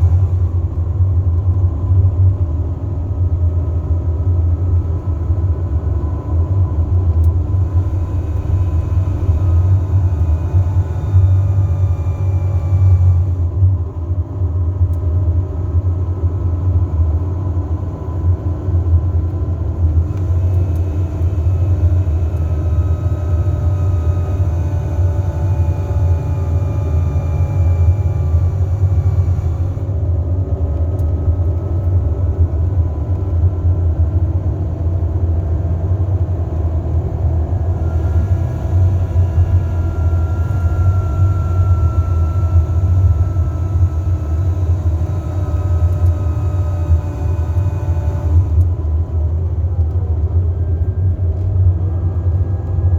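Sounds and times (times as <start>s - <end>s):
low engine drone: 0.0s - 52.9s
high whines of retarder braking: 6.8s - 13.5s, 19.8s - 30.1s, 37.4s - 52.9s.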